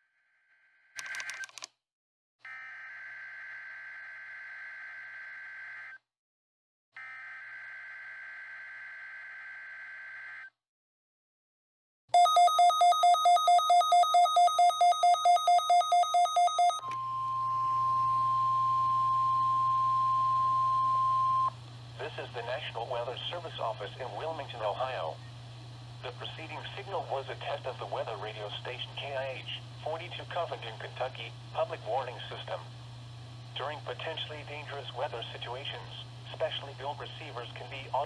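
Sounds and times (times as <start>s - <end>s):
rapid electronic beeping: 12.2s - 16.8s
steady warning alarm tone: 12.2s - 25.3s.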